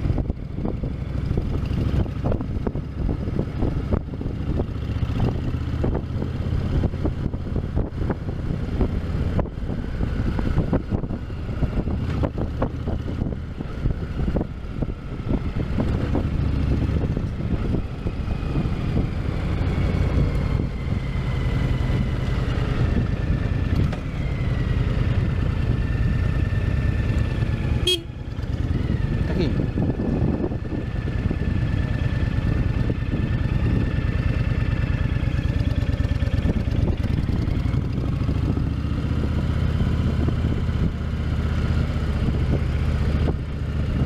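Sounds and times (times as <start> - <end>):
motorcycle engine rumbling: 0.0 - 44.0.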